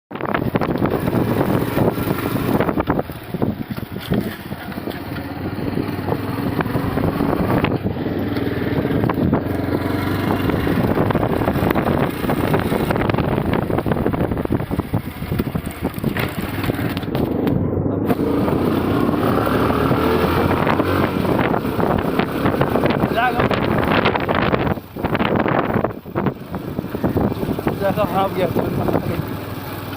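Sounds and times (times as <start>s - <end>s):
motorcycle engine running: 0.1s - 29.9s
rushing noise: 9.6s - 24.5s.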